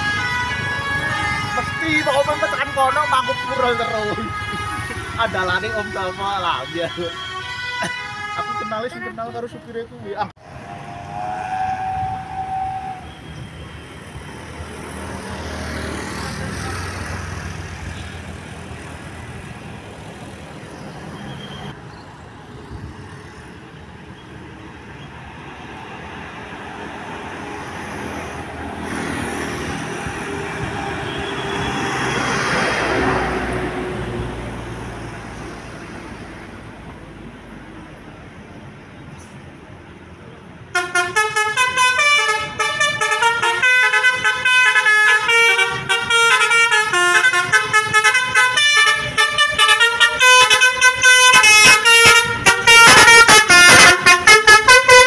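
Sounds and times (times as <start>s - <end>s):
vehicle horn: 0.0s - 9.1s, 10.6s - 13.5s, 30.7s - 32.9s, 40.7s - 55.0s
road traffic passing: 0.0s - 55.0s.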